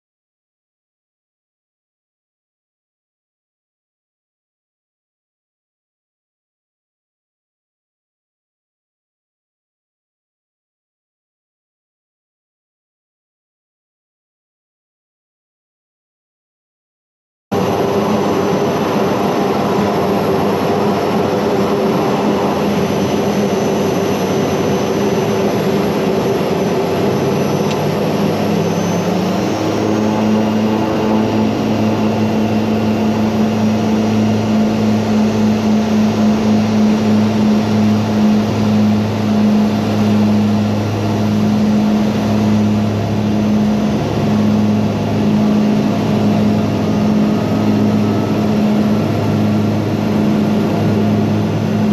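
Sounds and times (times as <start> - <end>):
turboprop engines droning: 17.5 - 51.9.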